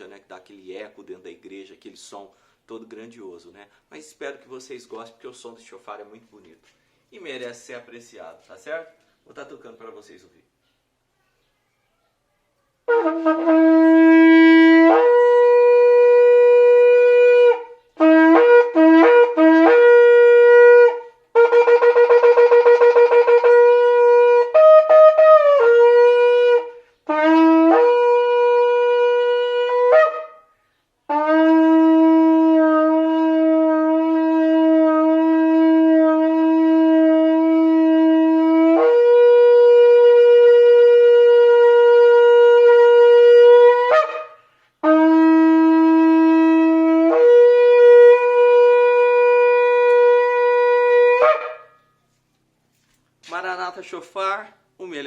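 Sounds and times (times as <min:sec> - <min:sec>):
shofar blasts: 0:12.8 - 0:52.1.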